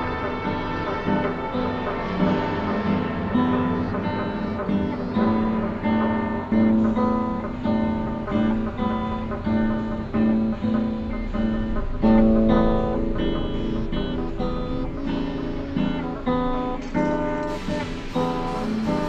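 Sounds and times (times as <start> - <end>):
guitar strumming chords: 0.0 - 19.0.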